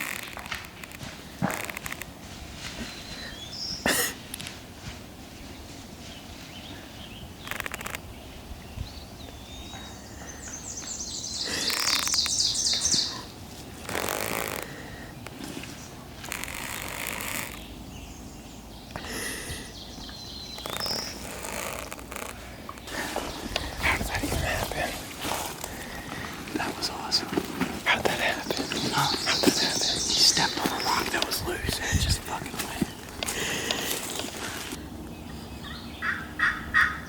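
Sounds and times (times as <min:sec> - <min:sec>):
songbird trilling: 0:07.0 - 0:14.7, 0:16.3 - 0:26.0, 0:26.6 - 0:37.0
rushing rustling noise: 0:15.3 - 0:17.7.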